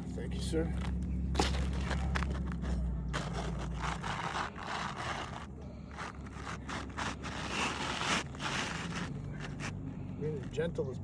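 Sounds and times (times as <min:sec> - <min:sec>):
roofing shingle scraping and rustling: 0:03.2 - 0:09.8.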